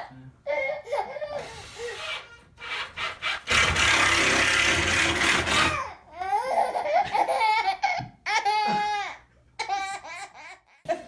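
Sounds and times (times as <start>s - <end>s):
baby laughing: 6.2s - 11.0s.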